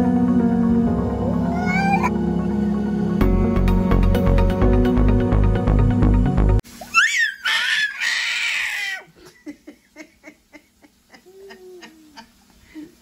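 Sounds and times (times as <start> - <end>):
music: 0.0 - 6.6
child squealing and shrieking: 1.4 - 2.1, 6.8 - 9.1
child giggling: 8.8 - 13.0.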